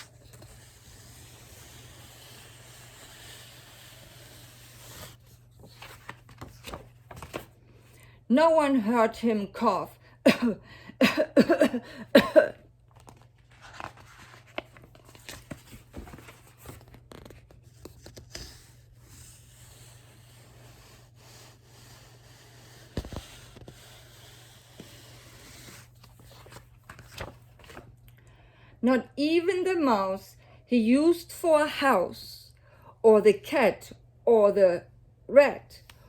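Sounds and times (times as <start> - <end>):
book pages rustling: 0.0 - 8.0, 12.8 - 28.0.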